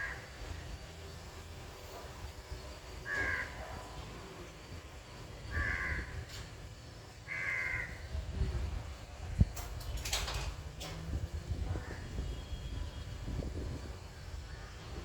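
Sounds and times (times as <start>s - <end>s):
crow cawing: 0.0s - 0.3s, 3.1s - 3.6s, 5.4s - 6.3s, 7.3s - 8.1s.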